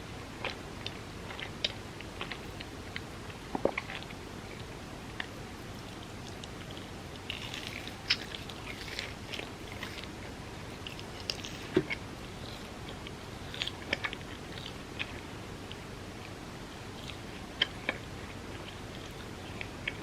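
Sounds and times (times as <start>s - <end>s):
person biting and chewing: 5.2s - 15.8s.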